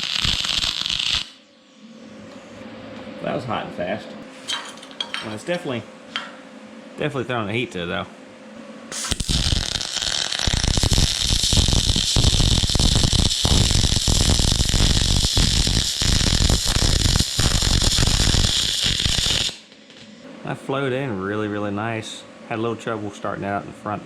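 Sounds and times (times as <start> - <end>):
welding arc crackling hiss: 0.0 - 1.4, 8.9 - 20.2.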